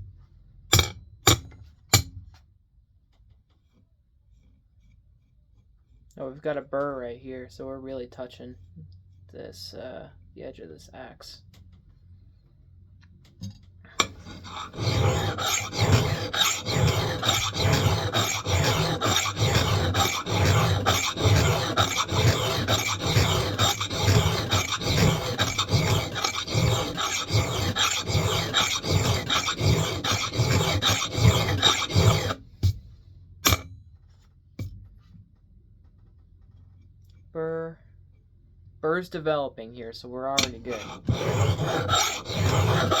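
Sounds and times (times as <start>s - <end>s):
file rasping on steel: 14.0s - 32.8s, 33.4s - 33.6s, 40.4s - 43.0s.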